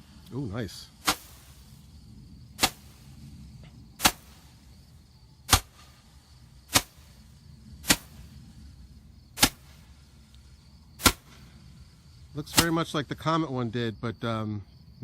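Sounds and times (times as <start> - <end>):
roman candle pops: 2.6 - 2.9, 9.4 - 9.7, 11.0 - 11.4.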